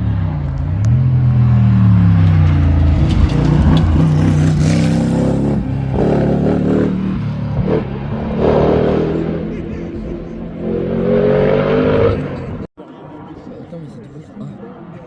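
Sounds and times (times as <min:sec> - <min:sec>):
racing car engine revving: 0:00.8 - 0:12.7.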